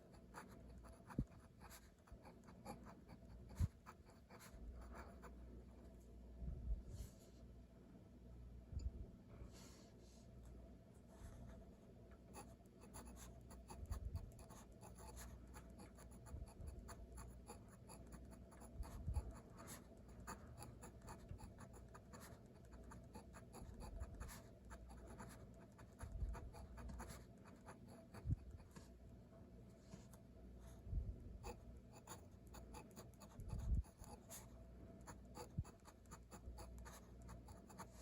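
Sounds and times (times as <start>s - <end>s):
pen scratching on paper: 0.0s - 5.4s, 12.3s - 28.8s, 31.4s - 38.0s.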